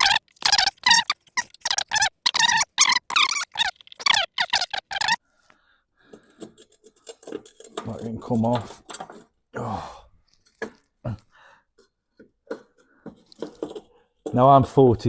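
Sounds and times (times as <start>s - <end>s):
high-pitched squeaky chatter: 0.0s - 5.2s.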